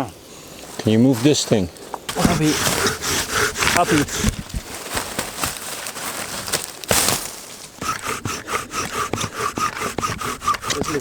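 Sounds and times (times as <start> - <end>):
bow drill spindle squeaking: 2.1 - 4.7, 7.8 - 11.0.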